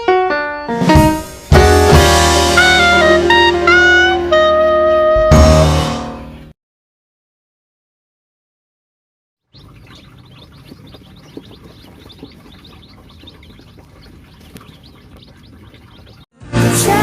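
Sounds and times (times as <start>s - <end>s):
loud music: 0.9s - 6.1s
chicks peeping: 9.5s - 16.3s.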